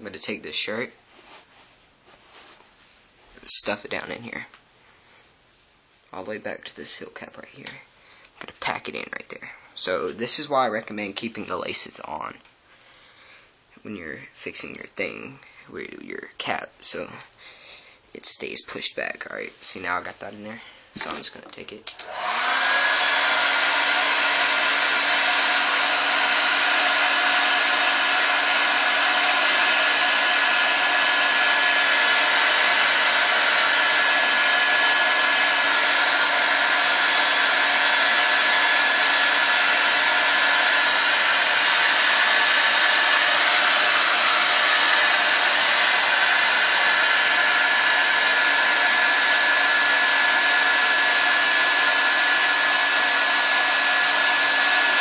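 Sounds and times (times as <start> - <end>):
hot-air blower running: 21.9 - 55.0.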